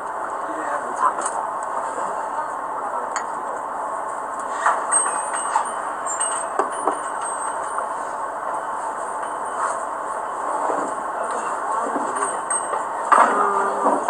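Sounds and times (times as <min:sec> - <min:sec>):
glassware and tableware clinking: 0:04.6 - 0:07.9.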